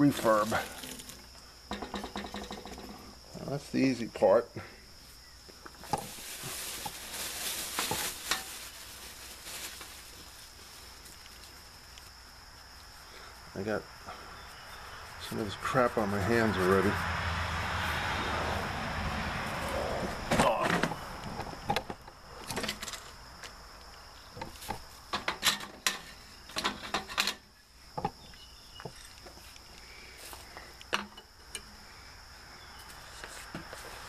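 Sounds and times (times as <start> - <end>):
rustling noise: 5.0 - 13.0, 32.8 - 34.0.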